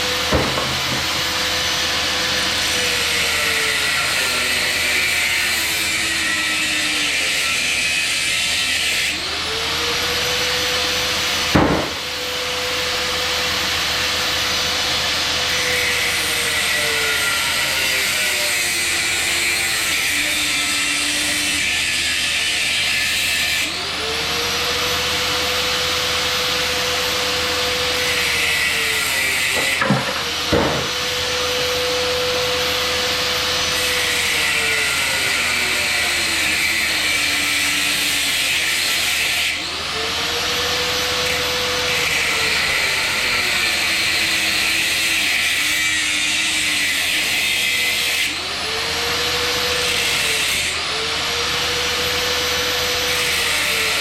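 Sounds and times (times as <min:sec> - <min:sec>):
power cutting tool cutting metal: 0:00.0 - 0:54.0
sharp knocks: 0:00.3 - 0:01.2, 0:11.6 - 0:12.1, 0:29.6 - 0:31.0.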